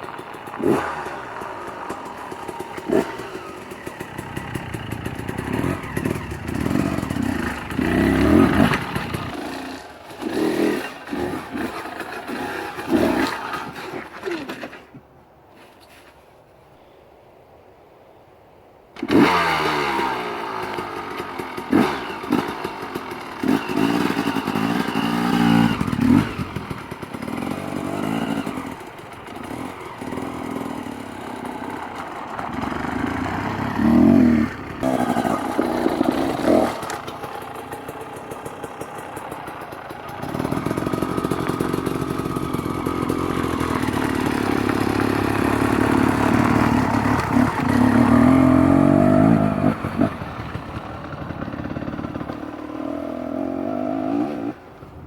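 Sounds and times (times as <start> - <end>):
dirt bike engine revving: 0.0 - 14.9, 19.0 - 54.7.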